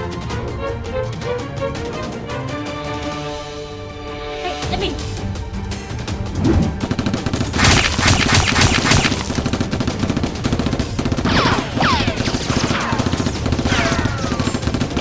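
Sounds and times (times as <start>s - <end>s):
rapid automatic gunfire: 6.7s - 15.0s.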